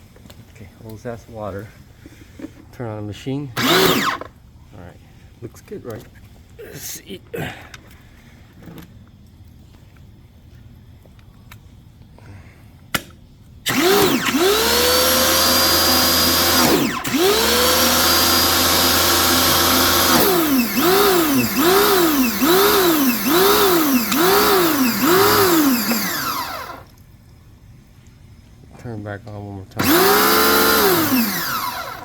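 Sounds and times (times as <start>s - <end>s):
pressure washer motor and pump: 3.5s - 4.4s, 13.6s - 27.0s, 29.7s - 32.0s.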